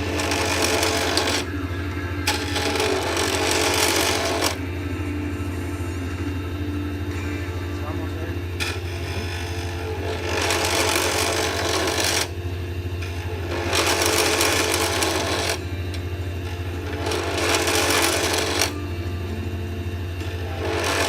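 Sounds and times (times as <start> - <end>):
tool scraping spinning acrylic: 0.0 - 1.5, 2.3 - 4.6, 8.6 - 12.3, 13.0 - 15.6, 16.5 - 18.8, 20.2 - 21.0
lathe motor humming: 0.0 - 21.0.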